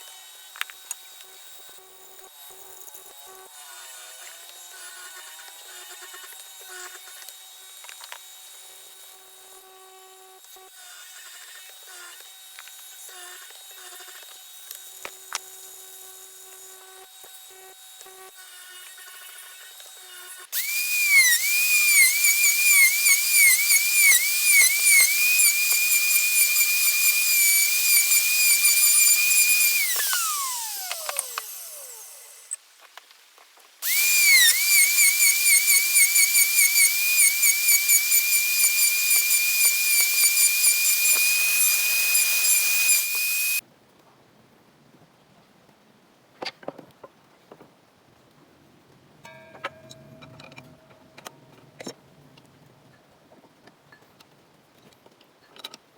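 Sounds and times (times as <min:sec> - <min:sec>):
power tool whining on wood: 0:00.0 - 0:32.6, 0:33.8 - 0:43.6.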